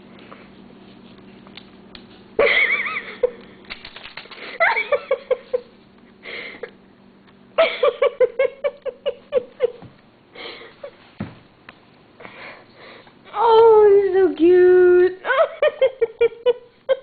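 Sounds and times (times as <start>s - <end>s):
person giggling: 2.4s - 3.6s, 4.4s - 6.8s, 7.6s - 11.0s, 15.2s - 17.0s.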